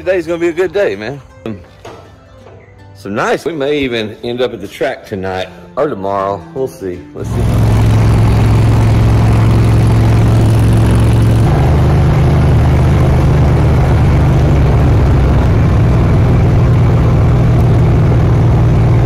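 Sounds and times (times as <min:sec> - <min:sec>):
car engine running loud: 0:07.2 - 0:19.0.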